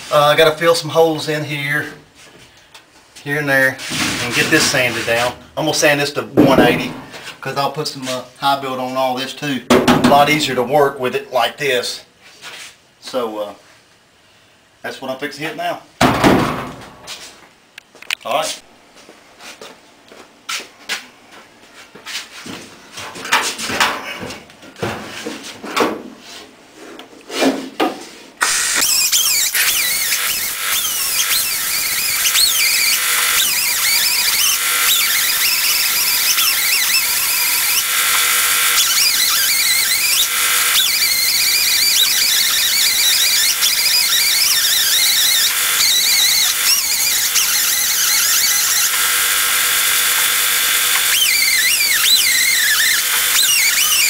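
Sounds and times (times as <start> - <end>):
power sander on sheet metal: 6.4 - 7.2, 28.4 - 54.0.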